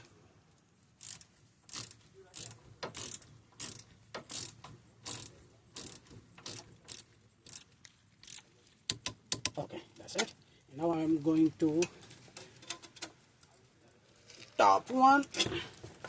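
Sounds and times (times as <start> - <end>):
torque wrench ratchet clicking: 1.0 - 7.6.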